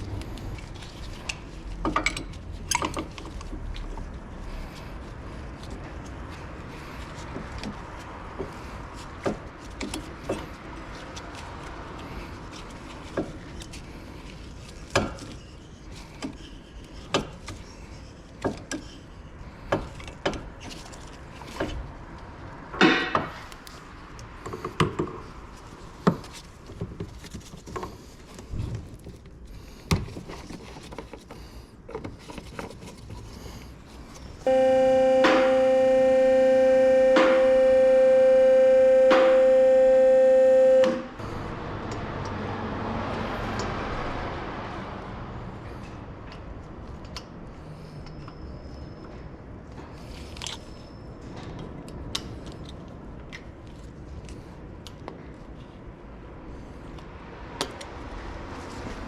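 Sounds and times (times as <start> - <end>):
synthesizer music: 34.5 - 41.2.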